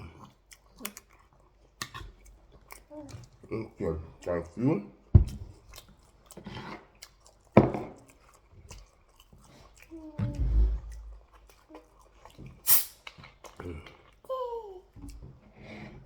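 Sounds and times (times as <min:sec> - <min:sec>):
person chewing food: 0:00.0 - 0:16.0
wet mouth clicks and smacks: 0:00.2 - 0:03.4, 0:10.9 - 0:13.6
hum-like mouth sound: 0:09.9 - 0:11.3.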